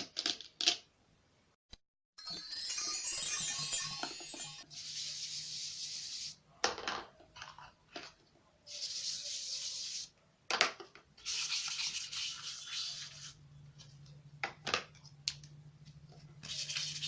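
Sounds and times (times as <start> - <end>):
toy hissing: 8.7 - 10.1.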